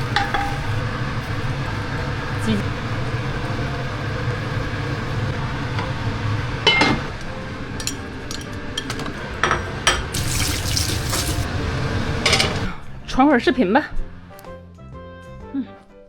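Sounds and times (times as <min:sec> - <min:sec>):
water pouring: 0:10.2 - 0:11.5.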